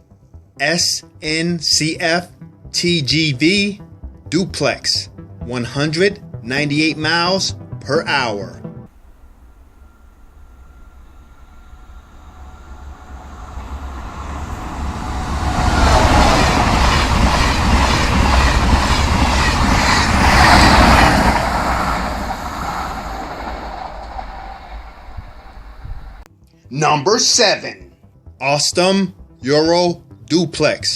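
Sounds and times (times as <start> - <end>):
high-speed train passing: 8.9 - 26.3.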